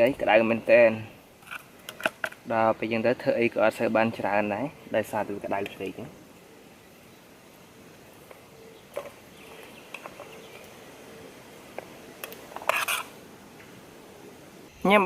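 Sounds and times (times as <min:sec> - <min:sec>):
faint outdoor background: 0:00.0 - 0:15.0
objects being handled: 0:08.2 - 0:10.8, 0:11.7 - 0:13.2
short scraping noise: 0:12.6 - 0:13.1.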